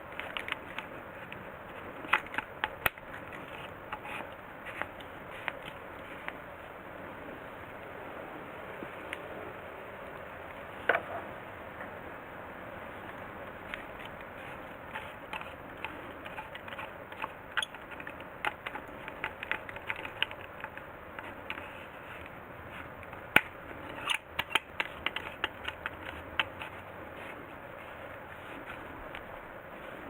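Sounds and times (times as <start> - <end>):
small clicks and knocks: 0.0 - 6.4, 13.1 - 29.3
steady hiss: 0.0 - 30.0.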